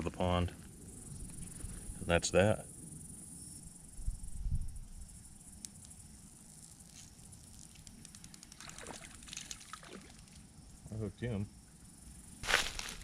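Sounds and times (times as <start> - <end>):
insects buzzing: 0.0 - 13.0
wind rumble on microphone: 3.8 - 5.1.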